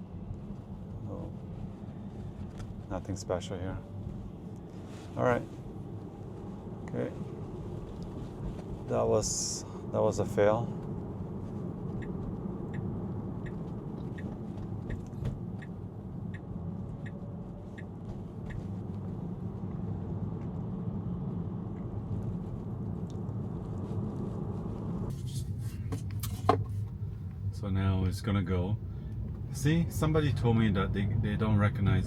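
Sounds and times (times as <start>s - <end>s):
road and tyre noise in car: 0.0s - 32.0s
turn signal ticking: 11.8s - 19.8s.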